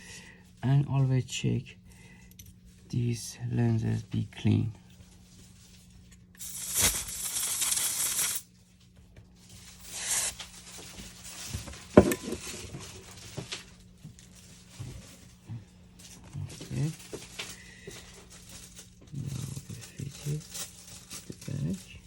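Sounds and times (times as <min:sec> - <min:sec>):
rasping hiss: 0:06.4 - 0:08.4, 0:09.8 - 0:10.5.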